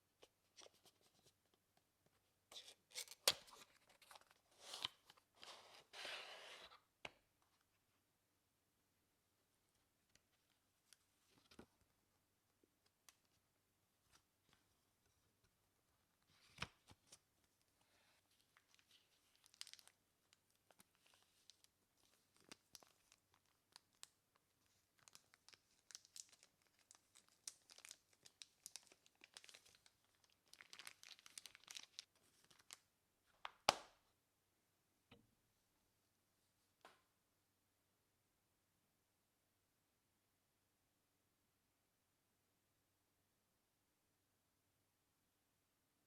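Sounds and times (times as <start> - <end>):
wrapping crinkling and tearing: 18.4 - 24.1, 25.0 - 32.8.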